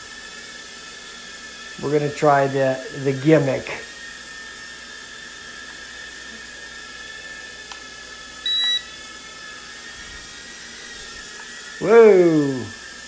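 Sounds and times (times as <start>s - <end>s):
quadcopter motors whining: 0.0s - 13.0s
short high electronic beep: 8.5s - 8.9s.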